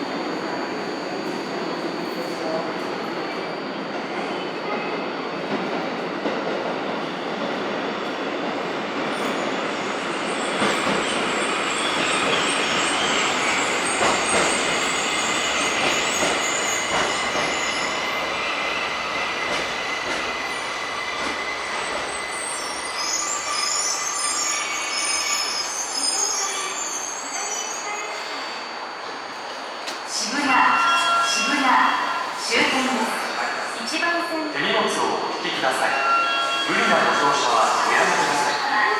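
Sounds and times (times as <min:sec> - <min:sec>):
train wheels squealing: 0:00.0 - 0:06.0, 0:08.0 - 0:38.9
subway train running: 0:00.0 - 0:38.9.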